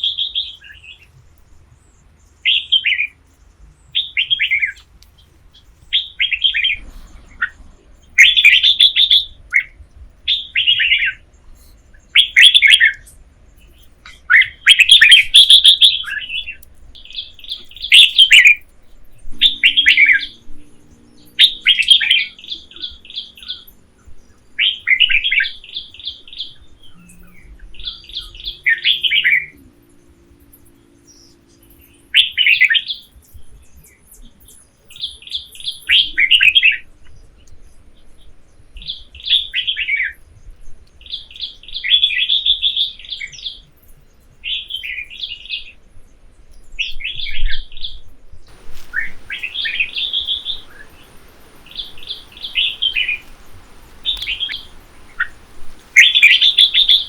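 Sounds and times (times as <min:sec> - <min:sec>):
songbird chirping: 0:00.0 - 0:33.2, 0:48.5 - 0:57.0.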